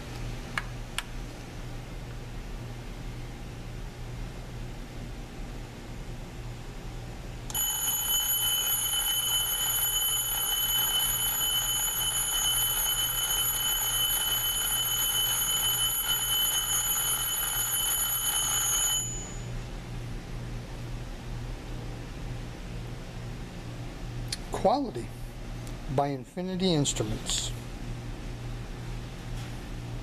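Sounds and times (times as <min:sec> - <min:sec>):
alarm clock bell ringing: 0:07.5 - 0:19.5.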